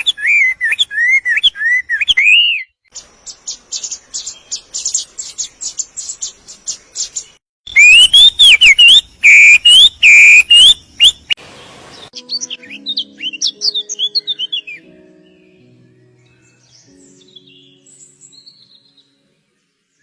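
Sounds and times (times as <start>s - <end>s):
high bird chirps: 0.2s - 15.6s.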